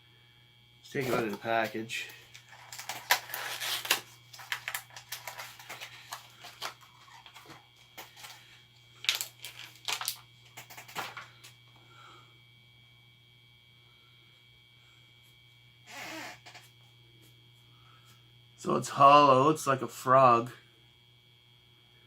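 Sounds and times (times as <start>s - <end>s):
plastic packaging crinkling: 1.0s - 11.3s.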